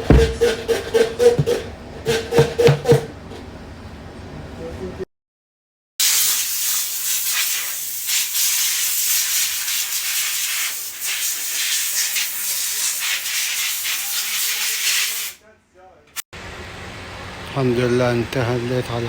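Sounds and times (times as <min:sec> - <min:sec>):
pressurized spray hissing: 0:06.0 - 0:15.4.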